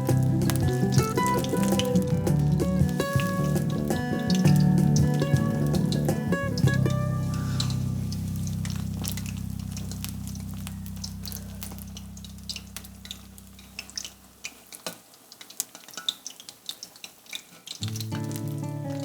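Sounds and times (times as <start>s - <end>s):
low held music notes: 0.0s - 14.3s
small clicks and pops: 0.0s - 19.0s.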